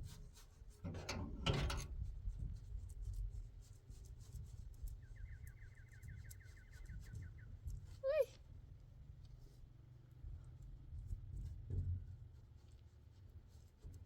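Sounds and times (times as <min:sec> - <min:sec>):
paint brushing on wall: 0:02.1 - 0:05.0, 0:10.9 - 0:14.0.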